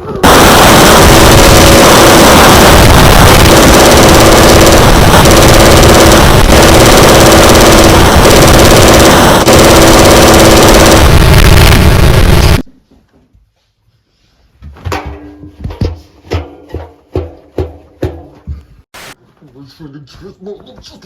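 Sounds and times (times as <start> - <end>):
loud distorted machine hum: 0.2 - 12.6.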